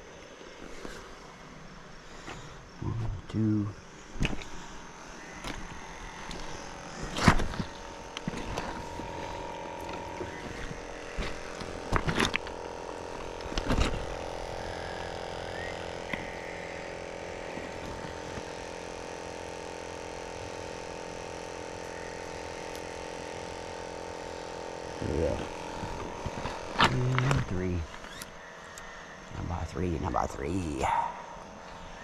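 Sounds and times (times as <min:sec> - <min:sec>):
steady drone: 0:00.0 - 0:32.0
small clicks: 0:09.8 - 0:14.2, 0:22.5 - 0:23.0.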